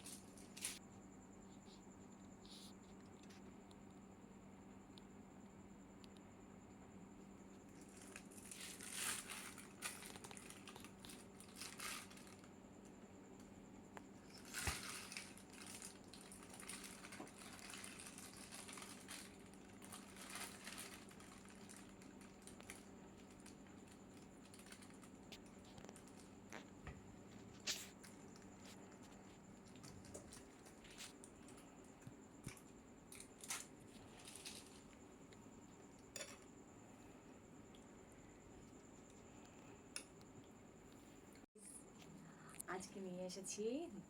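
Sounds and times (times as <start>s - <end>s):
crinkly wrapping rustling: 0.0s - 0.8s, 7.8s - 12.5s, 14.3s - 26.8s, 27.5s - 31.7s, 32.5s - 35.0s.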